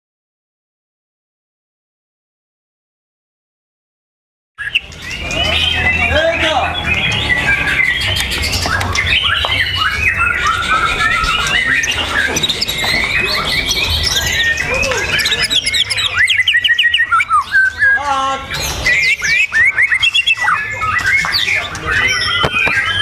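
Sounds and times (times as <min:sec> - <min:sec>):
songbird singing: 0:04.6 - 0:23.0.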